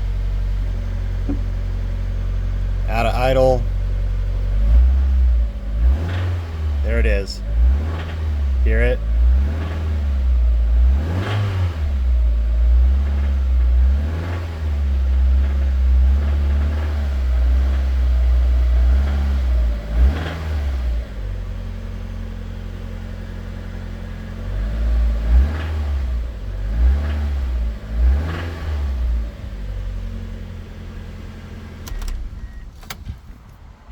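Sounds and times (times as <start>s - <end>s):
car engine revving from idle: 0.0s - 32.3s
engine rod knock: 1.2s - 1.6s.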